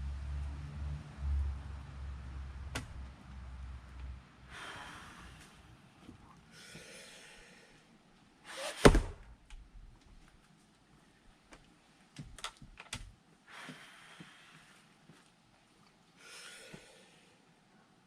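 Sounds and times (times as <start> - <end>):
heavy breathing: 4.4 - 7.9, 13.5 - 14.9, 16.2 - 17.5.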